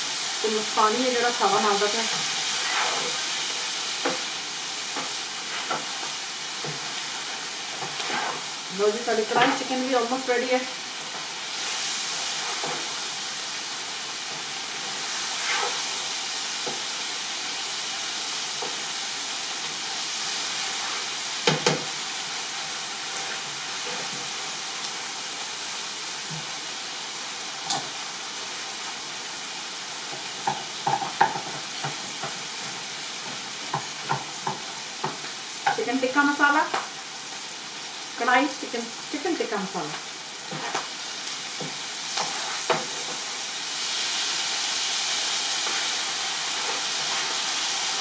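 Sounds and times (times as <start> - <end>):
food sizzling in a pan: 0.0 - 48.0
spoon scraping and knocking pan: 30.1 - 35.8, 40.5 - 40.9.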